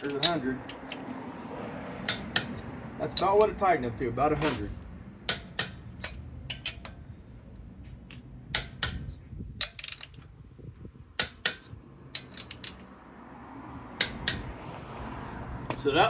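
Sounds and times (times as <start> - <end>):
metallic tool clicks and rattles: 8.6 - 10.3, 11.2 - 12.8.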